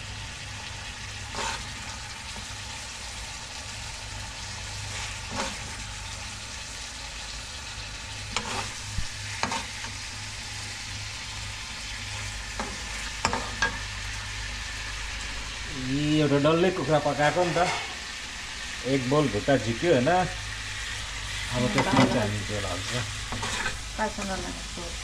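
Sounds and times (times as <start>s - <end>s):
chicken sizzling in a pan: 0.0s - 25.0s
metal spoon scraping a pan: 1.3s - 1.7s, 4.8s - 5.8s, 8.3s - 10.0s, 12.5s - 13.8s, 17.2s - 18.1s, 23.2s - 23.9s.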